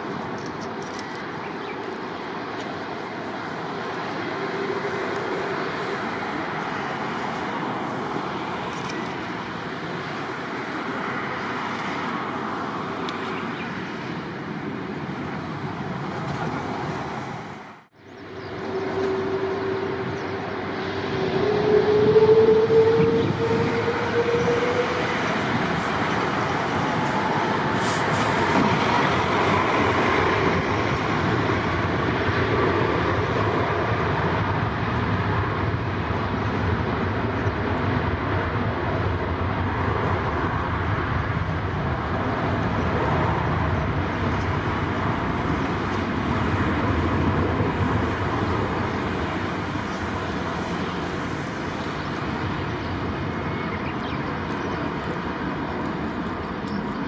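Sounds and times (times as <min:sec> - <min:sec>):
jet engines roaring at takeoff: 0:00.0 - 0:57.0.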